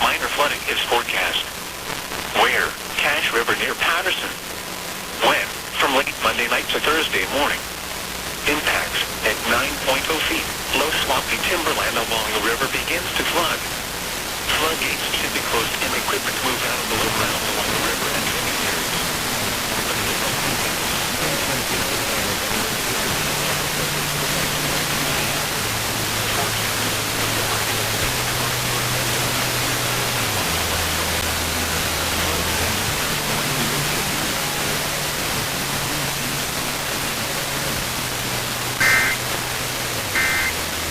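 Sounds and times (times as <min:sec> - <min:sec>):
radio static hiss: 0:00.0 - 0:40.9
two-tone digital data burst: 0:38.8 - 0:39.2, 0:40.1 - 0:40.6.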